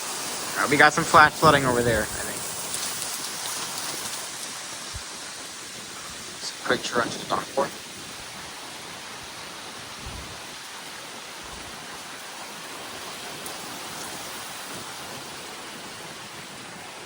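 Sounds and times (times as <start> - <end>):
rain falling: 0.0 - 17.0
faint low bumps: 10.0 - 10.5.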